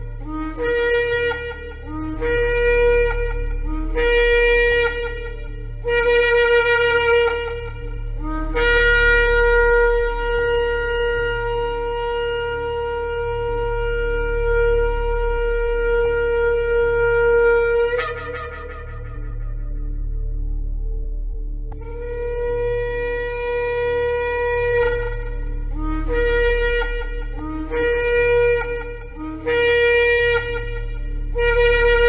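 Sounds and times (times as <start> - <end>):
shofar blasts: 0.0 - 21.0, 21.7 - 32.0
low steady hum: 0.0 - 32.0.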